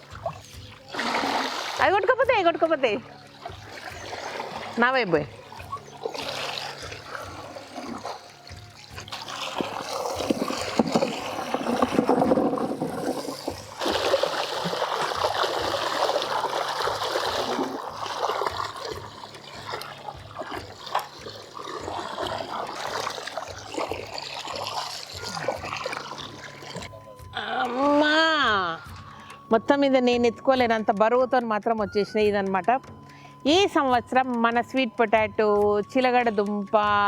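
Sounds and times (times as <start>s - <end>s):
water splashing in a tub: 0.0s - 27.0s.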